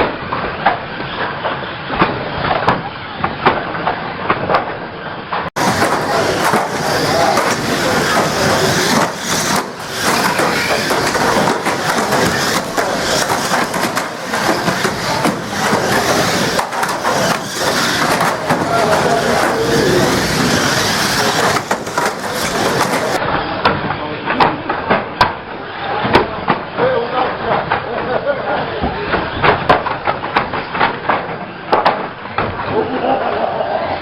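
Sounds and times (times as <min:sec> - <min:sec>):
cars knocking and banging: 0:05.4 - 0:25.4
racing car engines din: 0:05.6 - 0:23.5.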